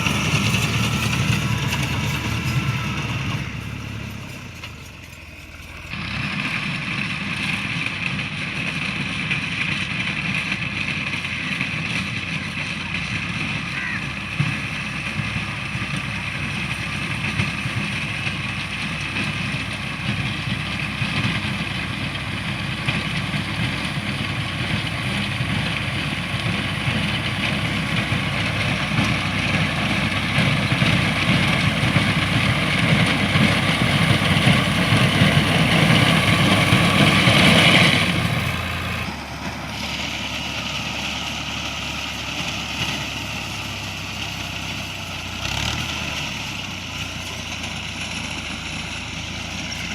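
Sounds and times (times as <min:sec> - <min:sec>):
harvester engine rumbling: 0:00.0 - 0:49.9.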